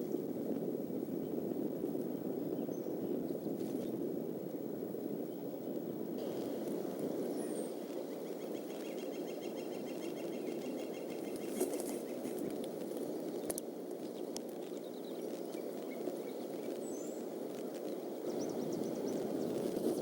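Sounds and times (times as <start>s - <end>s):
steady rain: 5.7s - 20.0s.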